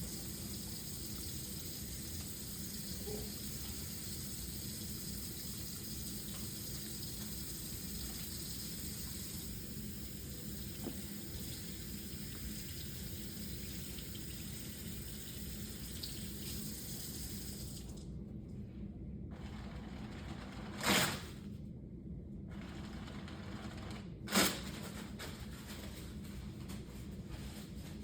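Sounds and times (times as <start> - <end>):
water running from a tap: 0.0 - 18.0.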